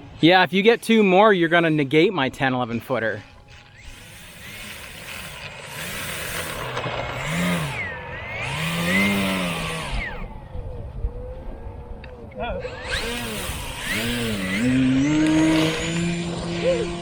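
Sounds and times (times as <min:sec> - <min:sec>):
model airplane motor buzzing: 0:03.2 - 0:11.3, 0:12.5 - 0:17.0.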